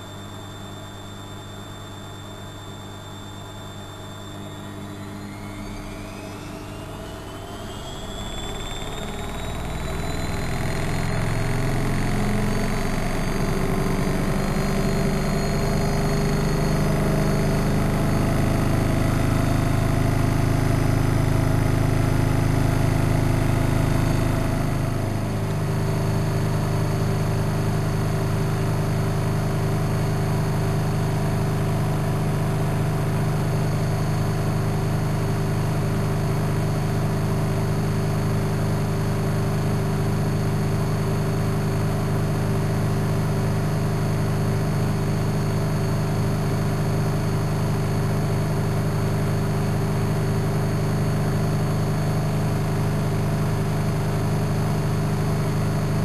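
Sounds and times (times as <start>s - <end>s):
washing machine spinning: 3.9s - 56.0s.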